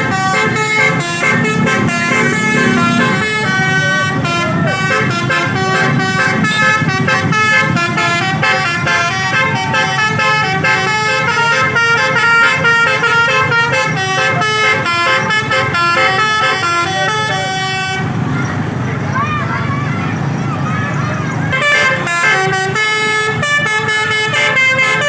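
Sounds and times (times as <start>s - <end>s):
musical air horn melody: 0.0s - 18.3s, 21.5s - 25.0s.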